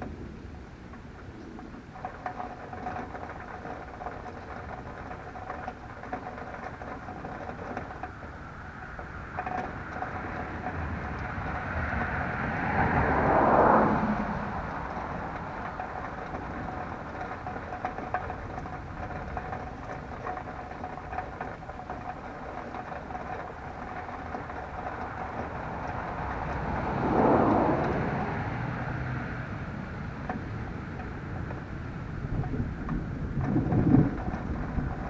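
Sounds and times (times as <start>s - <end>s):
outdoor background noise: 0.0s - 35.0s
vehicle passing: 9.5s - 18.7s, 22.8s - 32.3s.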